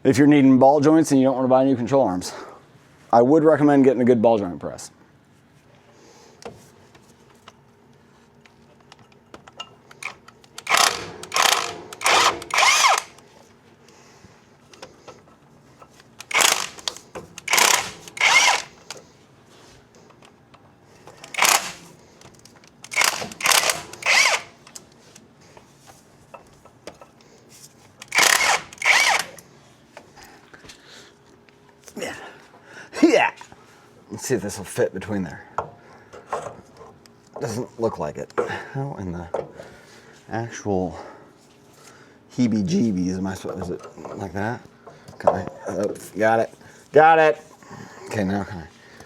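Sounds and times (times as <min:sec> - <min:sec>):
power drill bursts: 0:10.0 - 0:13.2, 0:16.2 - 0:18.9, 0:21.2 - 0:21.9, 0:22.8 - 0:24.6, 0:28.0 - 0:29.4.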